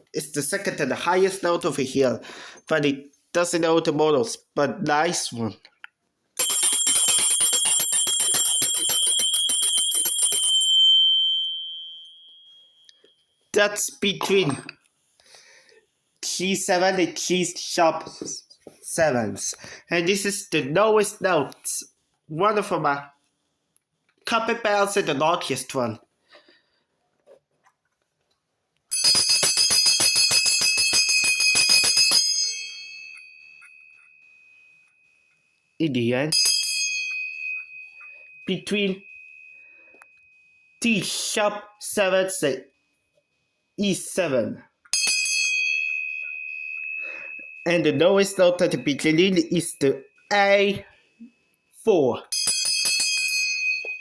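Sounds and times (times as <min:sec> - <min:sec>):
hand bell shaken rapidly: 0:06.4 - 0:12.2, 0:29.0 - 0:33.7
bell ringing note: 0:06.4 - 0:12.9, 0:28.9 - 0:34.7, 0:45.0 - 0:49.2.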